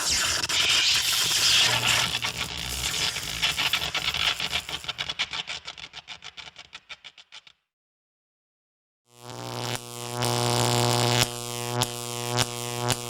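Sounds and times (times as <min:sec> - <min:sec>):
electric sparks crackling: 0:00.0 - 0:05.2.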